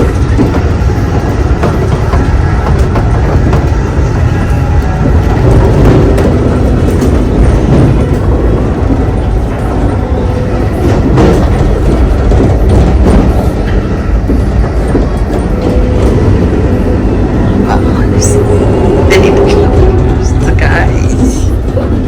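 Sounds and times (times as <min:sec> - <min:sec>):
train rumble on board: 0:00.0 - 0:22.0.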